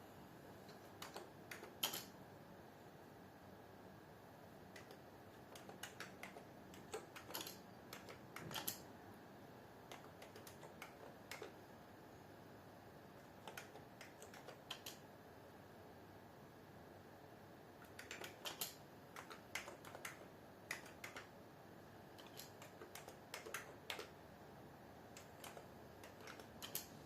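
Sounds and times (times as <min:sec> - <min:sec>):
typing on computer keyboard: 0:00.7 - 0:02.2, 0:04.7 - 0:08.9, 0:09.8 - 0:11.6, 0:13.2 - 0:15.0, 0:17.8 - 0:21.4, 0:22.1 - 0:24.2, 0:25.1 - 0:27.0.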